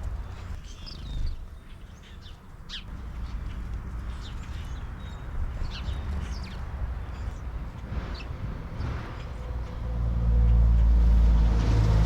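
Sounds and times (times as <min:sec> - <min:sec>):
small birds chirping: 0:00.0 - 0:09.3.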